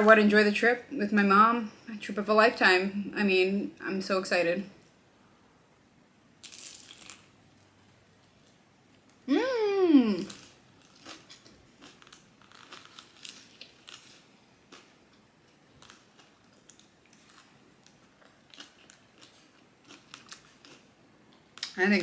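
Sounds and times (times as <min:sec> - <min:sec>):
crisp crunches: 0:06.4 - 0:07.3, 0:10.3 - 0:14.9
person chewing food: 0:10.3 - 0:21.7.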